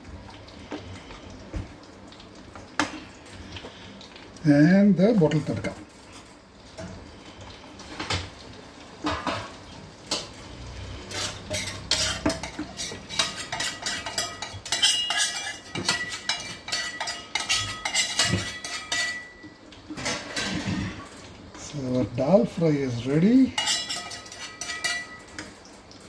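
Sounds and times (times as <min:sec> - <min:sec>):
metal spoon clinking in metal pot: 0:11.5 - 0:19.4, 0:23.6 - 0:25.5.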